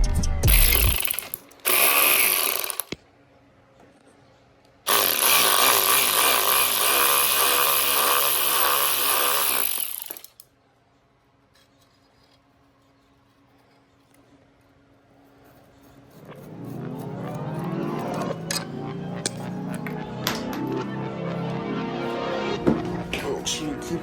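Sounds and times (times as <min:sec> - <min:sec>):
impact wrench running: 0:00.4 - 0:03.0, 0:04.9 - 0:10.4.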